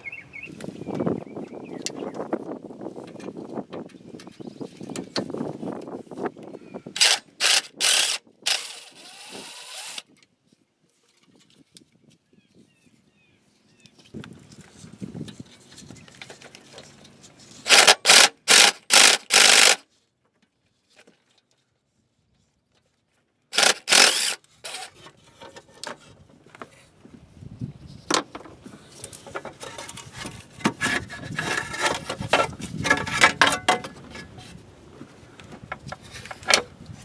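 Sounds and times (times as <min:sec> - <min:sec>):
plastic rubbing and scraping: 0:07.0 - 0:10.0, 0:16.6 - 0:19.8, 0:23.6 - 0:26.0, 0:29.0 - 0:34.6
power tool bursts: 0:07.0 - 0:10.0, 0:17.7 - 0:19.8, 0:23.6 - 0:24.9.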